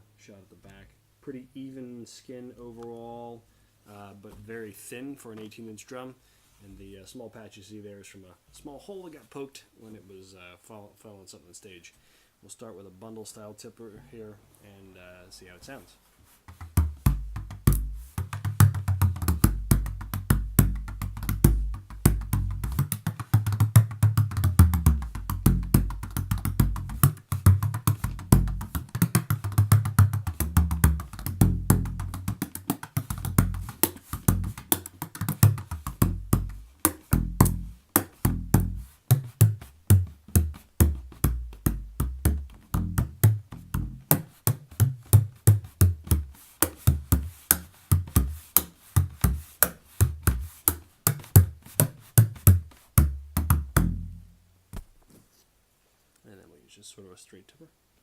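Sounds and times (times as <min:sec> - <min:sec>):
frame drum played fast: 0:16.7 - 0:54.3.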